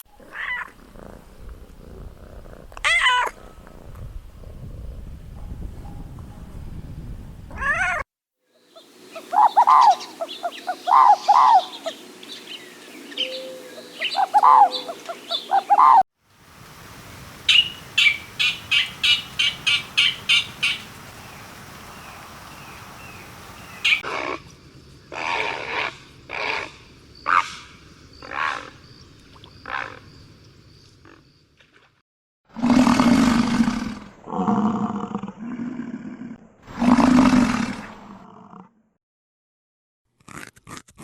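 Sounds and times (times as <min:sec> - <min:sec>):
high-pitched animal calls: 0:08.8 - 0:12.0, 0:13.2 - 0:16.0.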